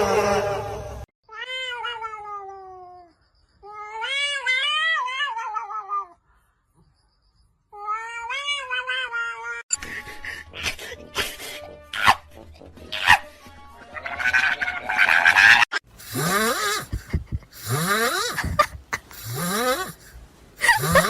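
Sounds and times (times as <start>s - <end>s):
cat yowling: 1.3s - 3.1s, 3.7s - 6.2s, 7.8s - 9.6s, 14.0s - 15.7s.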